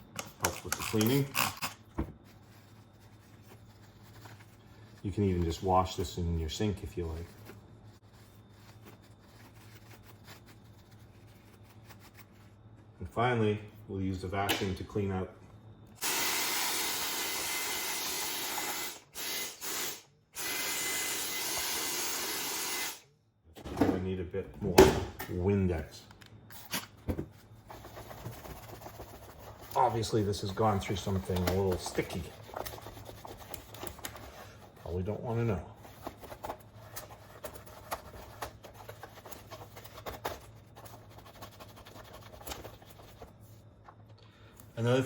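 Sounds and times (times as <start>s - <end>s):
paper towel scrubbing plastic: 0.2s - 12.6s, 27.4s - 43.7s
handheld vacuum cleaner running: 16.0s - 23.0s.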